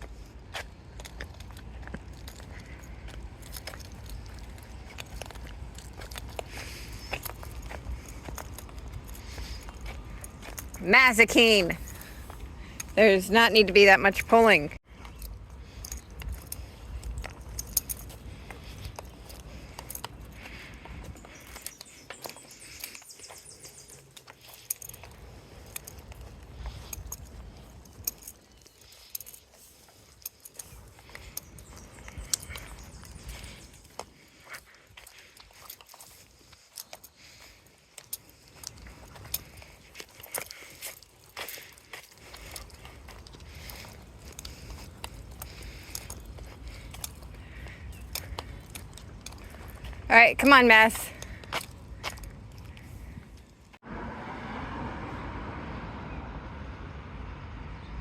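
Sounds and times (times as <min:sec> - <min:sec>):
footsteps on path: 0:00.0 - 0:53.8
light clicks and jingling: 0:00.0 - 0:53.8
bird chirping: 0:02.3 - 0:37.6, 0:38.2 - 0:53.7.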